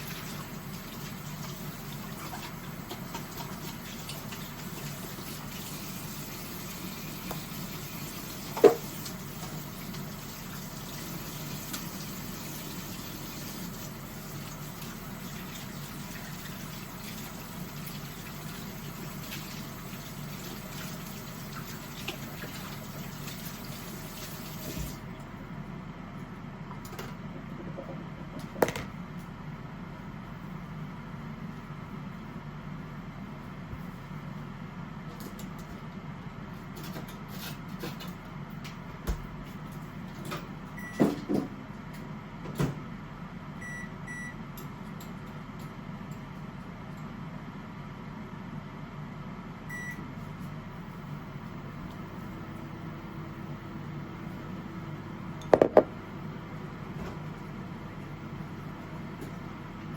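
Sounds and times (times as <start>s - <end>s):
tap running water: 0.0s - 25.1s, 55.4s - 56.0s
sharp knocks: 55.5s - 55.9s.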